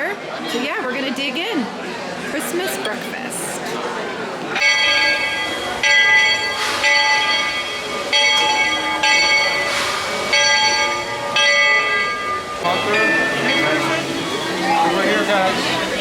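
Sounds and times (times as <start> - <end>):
metal bell ringing: 4.6 - 15.4.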